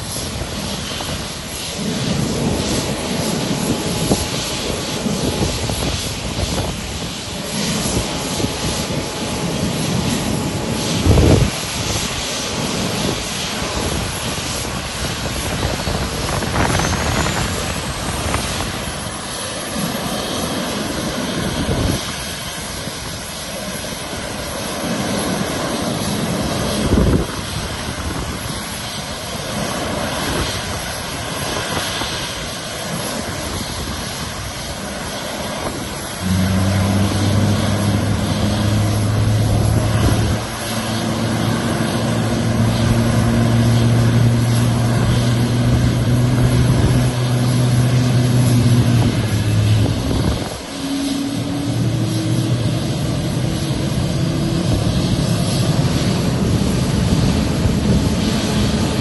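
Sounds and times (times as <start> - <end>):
jet engines running: 0.0 - 59.0.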